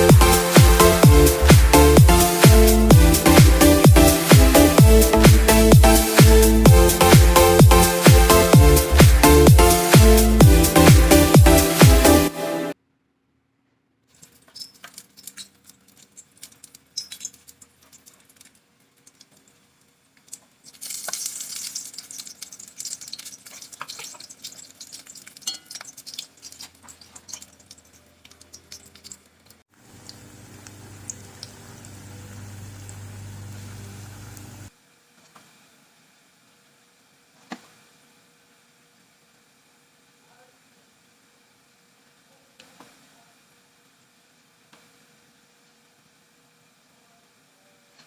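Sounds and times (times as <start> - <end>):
food sizzling in a pan: 14.2 - 46.9
utensils and dishes clinking: 23.0 - 29.1.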